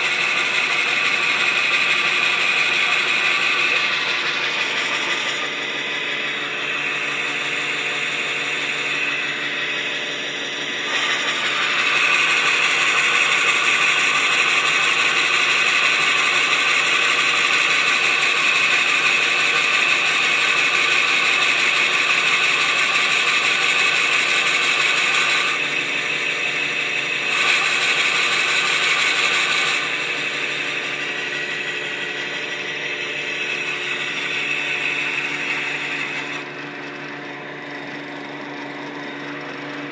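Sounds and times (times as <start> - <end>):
metal lathe gear whine: 0.0 - 39.9.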